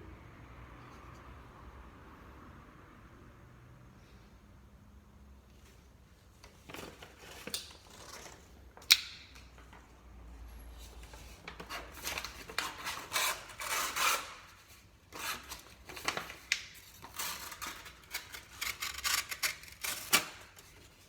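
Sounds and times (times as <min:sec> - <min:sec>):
knife scraping on a sharpener: 0:12.8 - 0:14.5.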